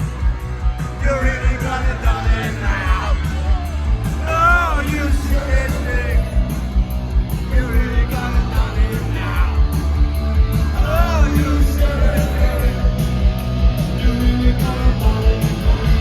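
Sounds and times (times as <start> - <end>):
punk rock band playing live: 0.0 - 16.0.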